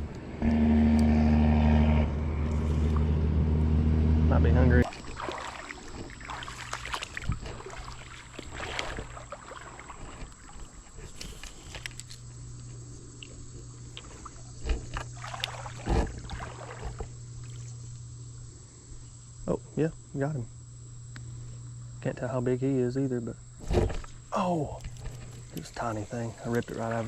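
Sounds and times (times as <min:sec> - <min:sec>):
faint low hum: 0:00.0 - 0:27.0
creek water splashing: 0:04.8 - 0:11.8, 0:13.9 - 0:18.0, 0:23.8 - 0:27.0.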